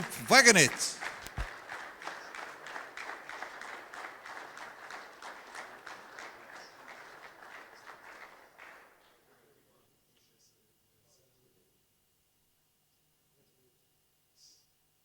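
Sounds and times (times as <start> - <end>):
audience applauding: 0.0 - 8.8.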